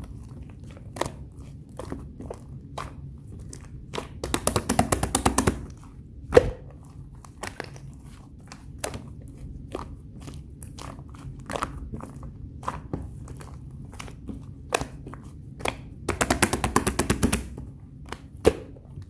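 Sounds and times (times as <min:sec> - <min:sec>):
sticky slime clicking: 0:03.4 - 0:06.7, 0:12.7 - 0:18.8.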